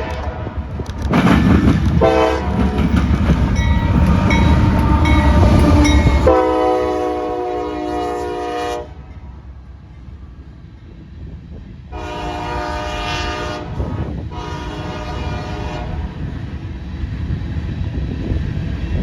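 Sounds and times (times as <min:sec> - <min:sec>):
train wheels clattering on rails: 0:00.0 - 0:07.0
train air horn: 0:02.0 - 0:02.9, 0:04.2 - 0:09.1, 0:11.9 - 0:16.2.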